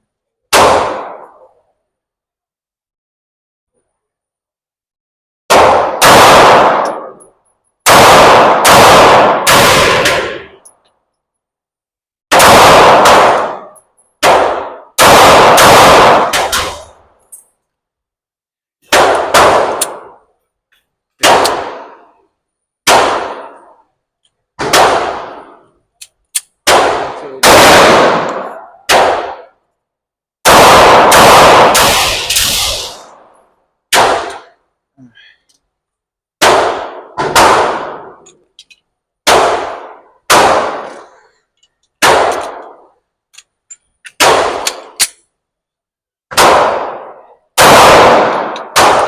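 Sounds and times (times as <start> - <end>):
handgun shots echoing indoors: 7.9 - 10.6.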